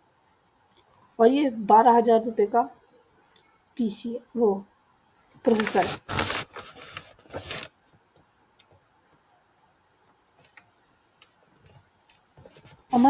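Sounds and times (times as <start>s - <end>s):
short rustle: 5.5s - 7.8s.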